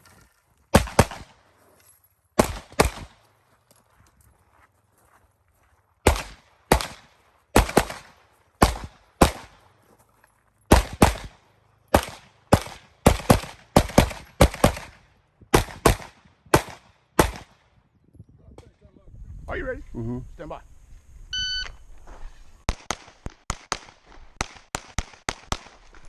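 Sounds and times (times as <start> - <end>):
pistol shots: 0.7 - 1.4, 2.4 - 3.3, 6.0 - 9.7, 10.7 - 17.6, 22.7 - 26.0.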